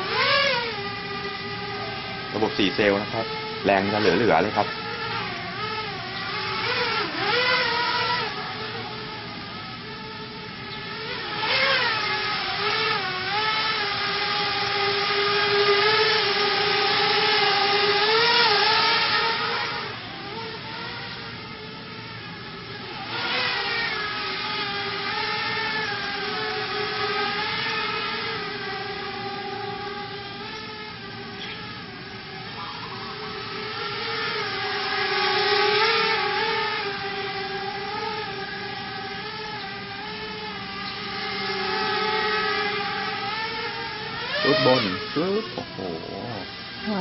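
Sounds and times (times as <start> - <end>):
quadcopter motors whining: 0.0 - 47.0.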